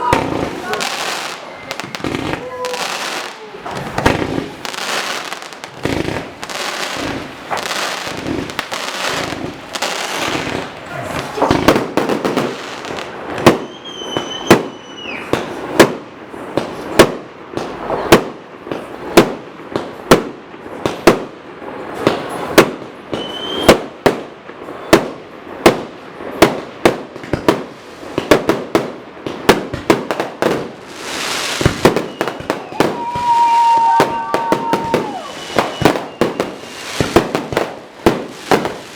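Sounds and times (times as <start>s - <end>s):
firework whistles: 0.0s - 11.6s, 12.7s - 15.6s, 23.1s - 23.9s, 31.0s - 37.4s
crackling firework bursts: 0.0s - 38.9s
loud firework bangs: 0.0s - 38.9s.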